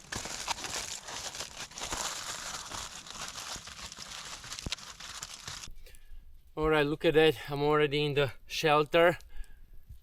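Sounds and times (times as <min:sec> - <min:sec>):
aluminium foil crinkling: 0:00.0 - 0:05.7.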